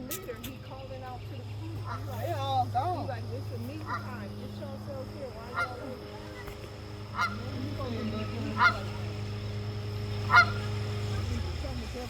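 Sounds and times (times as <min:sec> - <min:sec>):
steady low hum: 0:00.0 - 0:12.0
goose honking: 0:01.8 - 0:02.3, 0:03.8 - 0:04.2, 0:05.4 - 0:09.3, 0:10.2 - 0:11.4.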